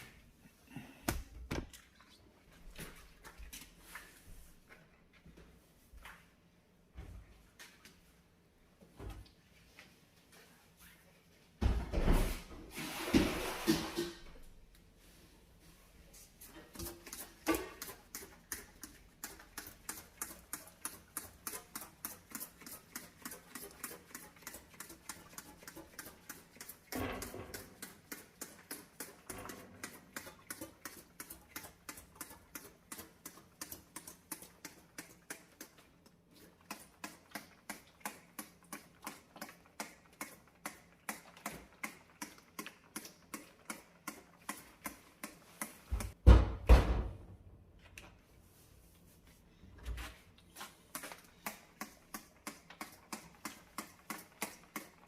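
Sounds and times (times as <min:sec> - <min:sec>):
brush scrubbing a stovetop: 0:12.2 - 0:14.2, 0:15.0 - 0:46.2, 0:48.3 - 0:55.0.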